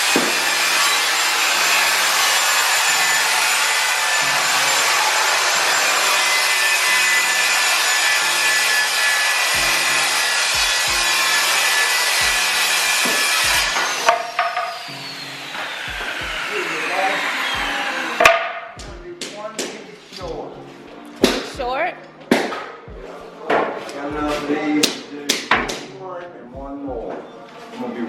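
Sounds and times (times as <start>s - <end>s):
power tool running: 0.0s - 18.7s
background music: 3.1s - 28.0s.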